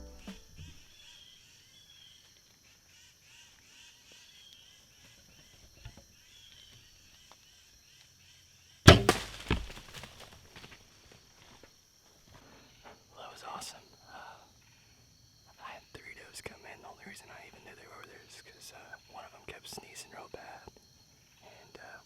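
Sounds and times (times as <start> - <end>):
faint insects chirping: 0.0 - 22.0
second sharp sound: 8.9 - 9.8
bowstring crack: 8.9 - 10.3
rustling: 8.9 - 10.8.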